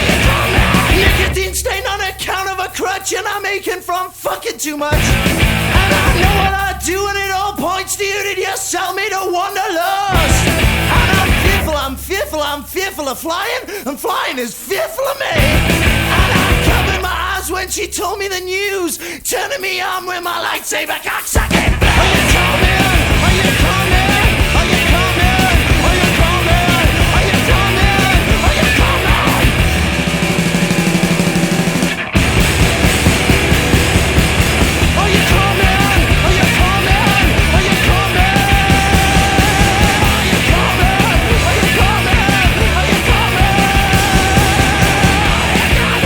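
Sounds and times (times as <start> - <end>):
loud punk rock song: 0.0 - 46.0.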